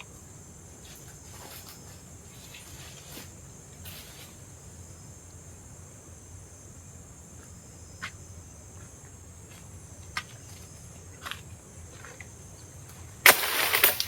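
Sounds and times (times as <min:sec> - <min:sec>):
insects buzzing: 0:00.0 - 0:14.0
loud crunching rustle: 0:13.2 - 0:14.0.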